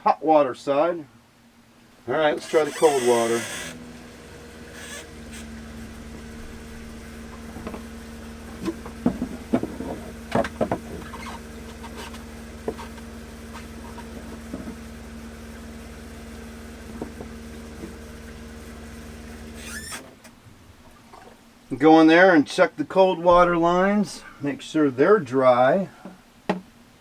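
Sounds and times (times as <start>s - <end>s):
water pump humming: 1.9s - 22.2s
tap water running: 2.4s - 20.0s
handling knocks and clatters: 6.3s - 14.9s, 16.9s - 18.1s.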